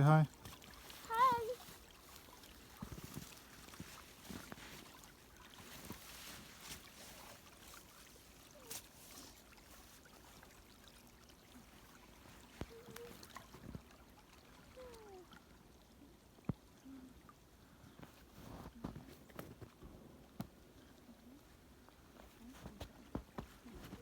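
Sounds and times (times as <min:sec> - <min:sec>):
faint outdoor hiss: 0:00.0 - 0:24.0.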